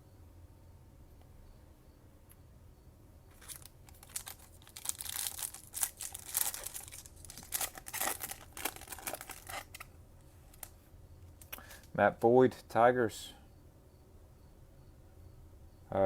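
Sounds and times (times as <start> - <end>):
wrapper tearing and crinkling: 3.3 - 9.9.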